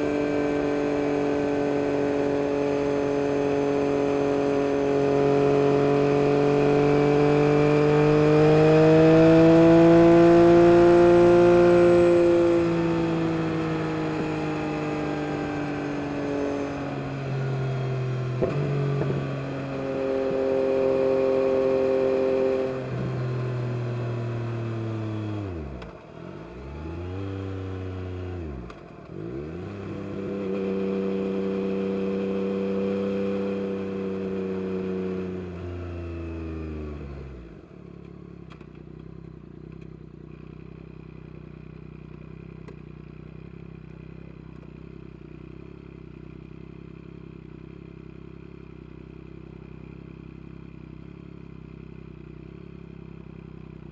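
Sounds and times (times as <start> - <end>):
motorcycle engine revving: 0.0 - 37.7
motorcycle engine idling: 37.5 - 53.9.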